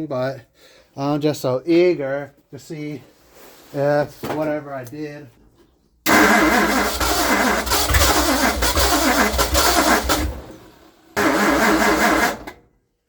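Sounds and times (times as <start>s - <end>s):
car engine cranking by starter: 6.1s - 12.7s.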